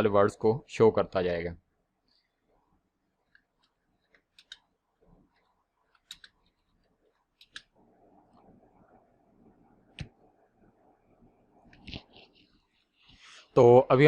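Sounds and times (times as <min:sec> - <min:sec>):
computer keyboard keystrokes: 0:04.1 - 0:04.6, 0:05.9 - 0:06.4, 0:07.4 - 0:07.7.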